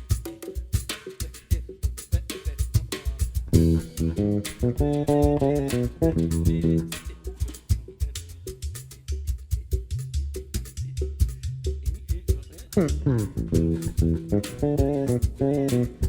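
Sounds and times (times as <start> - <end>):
percussion strokes: 0.0 - 16.0
bass guitar melodic line: 3.5 - 7.0, 12.8 - 16.0.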